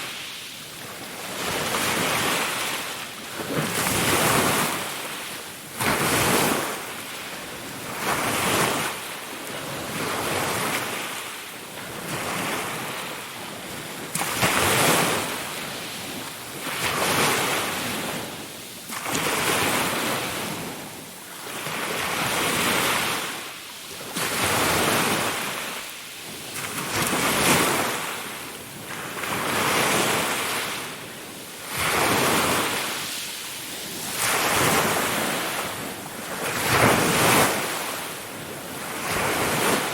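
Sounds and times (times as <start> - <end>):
ocean waves breaking: 0.0 - 39.9.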